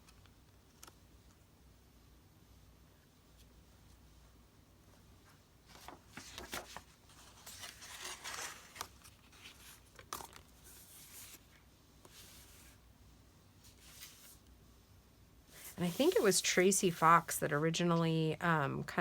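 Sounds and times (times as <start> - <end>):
paper rustling and crinkling: 5.6 - 12.8, 13.7 - 14.4, 15.6 - 17.3.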